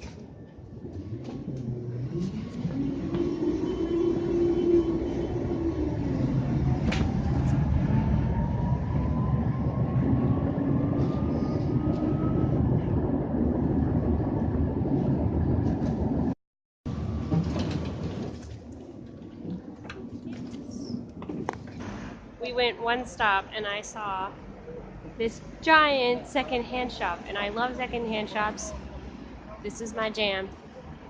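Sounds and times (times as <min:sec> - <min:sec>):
tram rumbling: 0:00.0 - 0:31.0
tram motor whine rising: 0:00.1 - 0:22.4.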